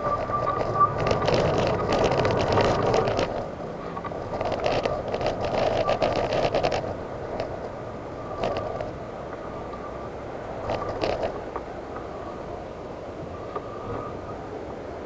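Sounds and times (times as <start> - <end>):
wheelchair motor whine: 0.0 - 6.8
wheels rattling over rough pavement: 0.0 - 15.0.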